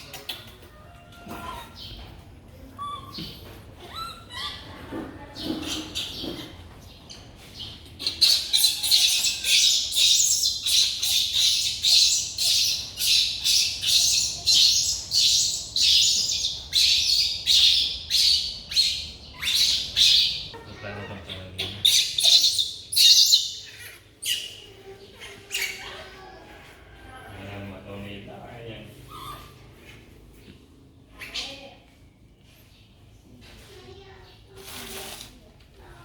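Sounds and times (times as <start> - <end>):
baby monkey squealing: 2.8 - 4.8, 5.5 - 6.6, 8.0 - 26.4, 29.0 - 30.0, 31.1 - 31.6.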